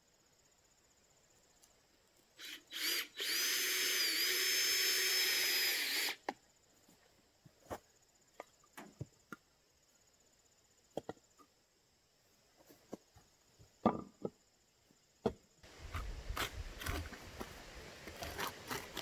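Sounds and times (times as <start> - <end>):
power tool whining: 2.4 - 6.2.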